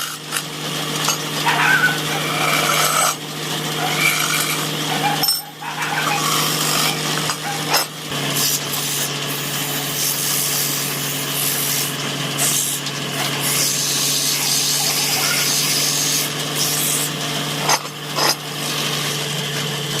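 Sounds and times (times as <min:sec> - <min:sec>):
wood scraping against tool: 0:00.0 - 0:03.2, 0:03.8 - 0:09.1
power tool motor hum: 0:00.0 - 0:20.0.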